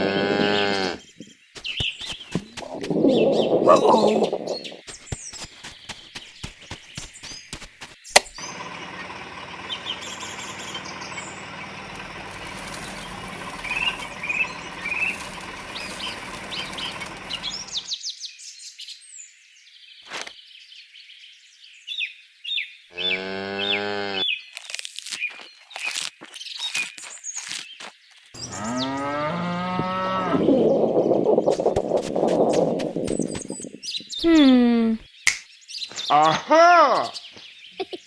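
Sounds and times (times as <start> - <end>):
small birds chirping: 1.1 - 8.6, 9.9 - 17.9, 31.5 - 36.0
quick run of clicks: 1.6 - 3.0, 4.9 - 8.4, 31.5 - 33.7, 35.3 - 35.5.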